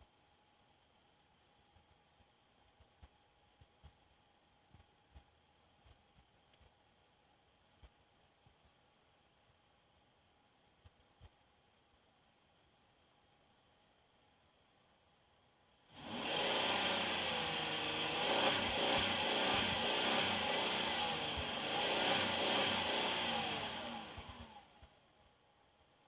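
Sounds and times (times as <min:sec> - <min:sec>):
car engine revving with wavering pitch: 0:16.0 - 0:24.8.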